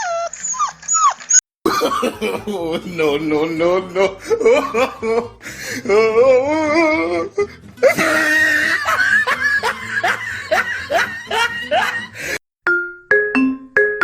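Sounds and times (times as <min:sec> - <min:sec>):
mallet percussion tune: 0:12.7 - 0:14.0.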